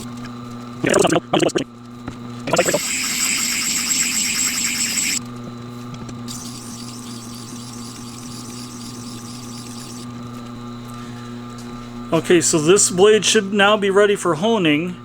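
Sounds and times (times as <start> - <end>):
grinder motor humming: 0.0 - 5.3, 6.2 - 10.2.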